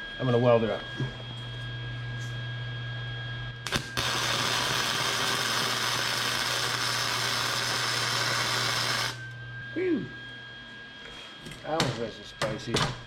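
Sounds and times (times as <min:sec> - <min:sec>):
arc welding crackle: 0:03.6 - 0:09.4.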